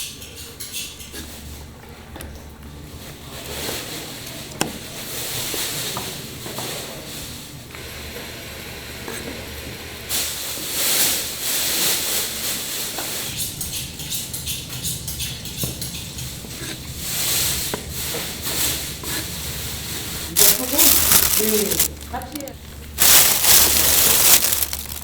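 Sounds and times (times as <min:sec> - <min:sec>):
food sizzling on a grill: 0:10.1 - 0:13.2.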